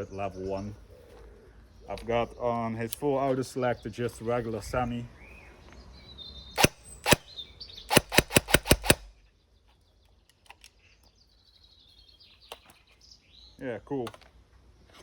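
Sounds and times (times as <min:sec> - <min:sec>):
airsoft gun shots cracking: 0:06.6 - 0:07.3, 0:07.9 - 0:09.1.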